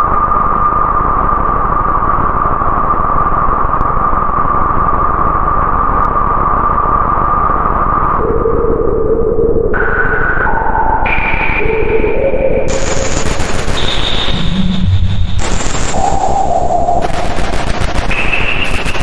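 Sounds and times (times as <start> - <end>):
synthesizer noisy drone: 6.3 - 19.0
low held synth tone: 8.0 - 17.1.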